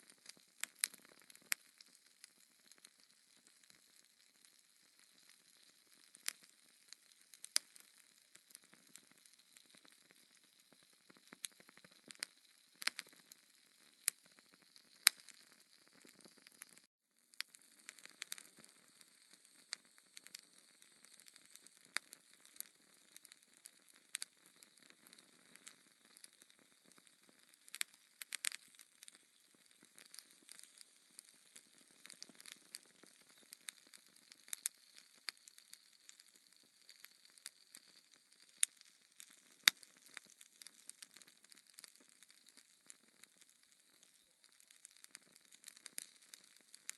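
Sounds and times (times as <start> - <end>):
faint steady hiss: 0.0 - 10.8
wood fire crackling: 0.0 - 46.9.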